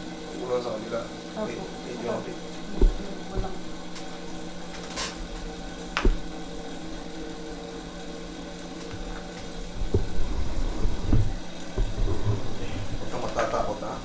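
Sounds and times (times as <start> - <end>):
steady mechanical hum: 0.0 - 14.0
handling noises and bumps: 2.6 - 6.4.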